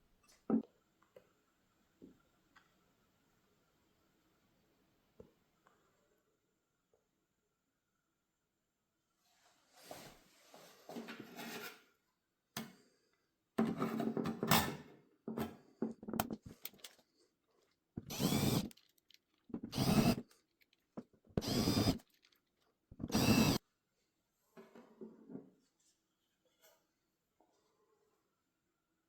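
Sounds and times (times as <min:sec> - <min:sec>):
clattering handling noises: 0:13.6 - 0:17.1
electric screwdriver running: 0:18.0 - 0:18.9, 0:19.6 - 0:20.2, 0:21.4 - 0:22.1, 0:23.0 - 0:23.6.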